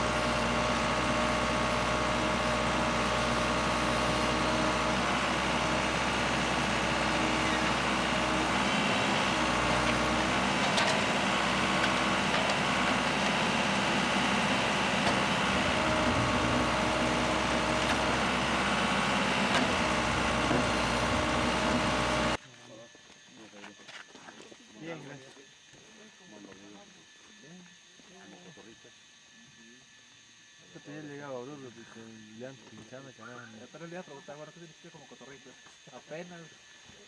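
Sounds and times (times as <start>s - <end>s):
engine idling: 0.0s - 22.4s.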